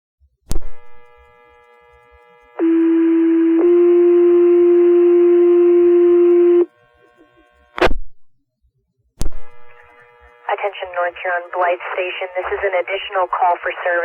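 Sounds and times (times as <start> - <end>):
burst of radio static: 10.4 - 14.0
radio hiss: 10.4 - 14.0.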